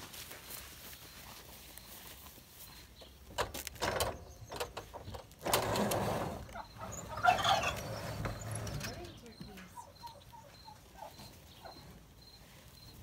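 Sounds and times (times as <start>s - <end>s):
poultry calling: 6.2s - 13.0s
gobbling: 6.5s - 7.9s, 9.7s - 11.8s.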